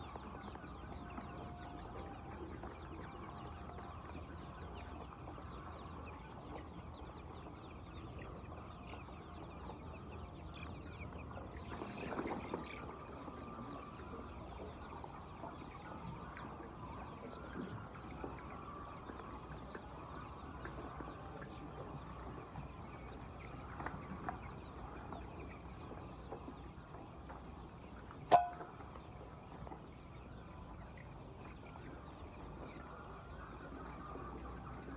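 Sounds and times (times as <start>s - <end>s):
sharp knock: 28.3s - 28.7s.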